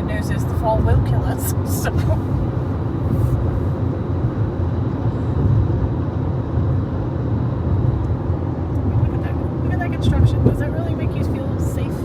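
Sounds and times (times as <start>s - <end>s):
car cabin road noise: 0.0s - 12.0s.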